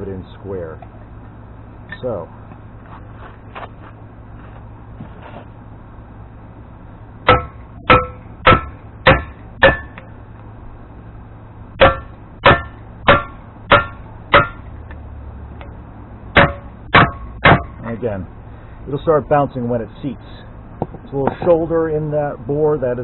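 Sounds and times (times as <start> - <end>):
hammer striking metal: 7.2 - 10.2, 11.8 - 14.7, 16.3 - 17.9.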